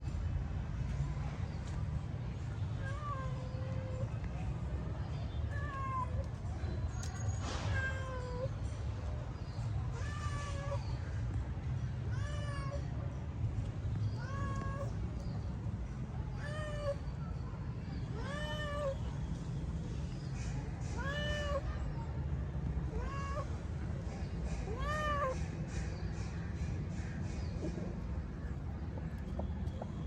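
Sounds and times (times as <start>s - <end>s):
cat meowing: 14.2s - 14.9s, 18.1s - 19.0s, 21.0s - 21.8s, 22.9s - 23.5s, 24.7s - 25.4s.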